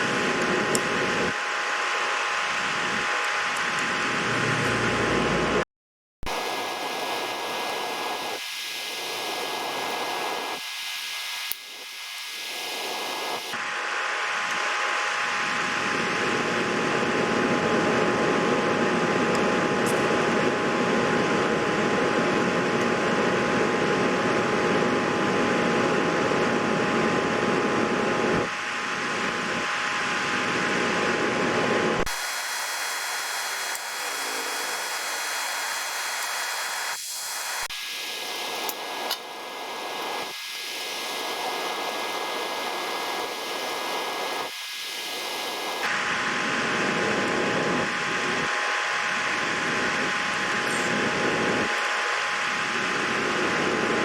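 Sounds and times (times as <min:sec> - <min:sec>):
faint steady tones: 0:32.0 - 0:45.9.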